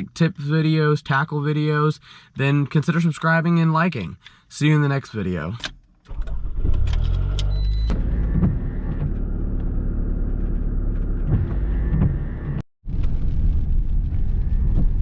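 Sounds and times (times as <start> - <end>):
car engine starting and running: 5.6 - 15.0.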